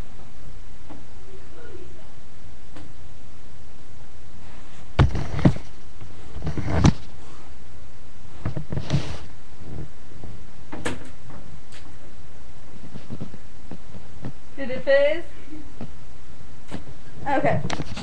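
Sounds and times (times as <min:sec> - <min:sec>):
steady background hiss: 0:00.0 - 0:18.0
knocks and thumps: 0:05.0 - 0:05.7.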